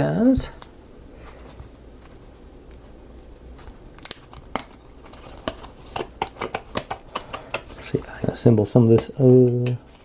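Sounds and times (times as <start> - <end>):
wooden pieces clicking and tapping: 5.4 - 9.8.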